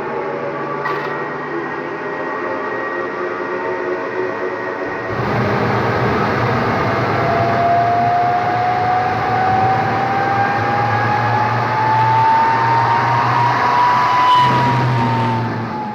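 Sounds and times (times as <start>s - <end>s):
jet engine spooling up: 4.4s - 15.9s.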